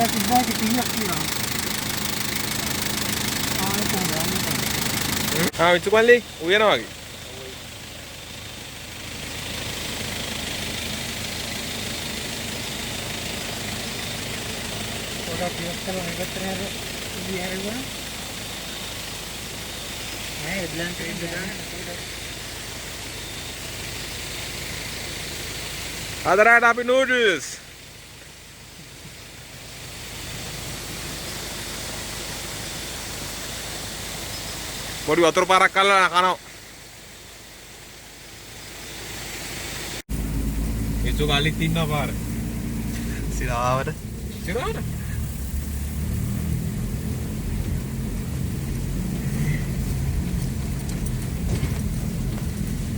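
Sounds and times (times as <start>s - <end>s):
stream flowing: 0.0s - 40.1s
engine idling: 0.0s - 52.9s.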